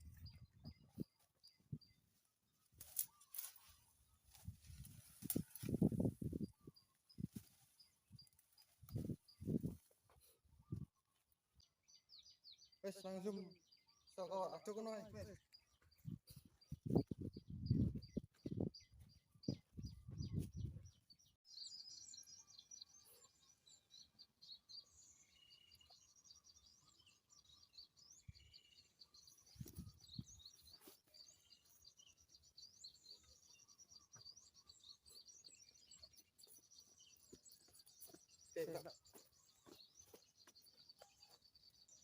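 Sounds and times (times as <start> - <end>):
small birds chirping: 0.0 - 42.0.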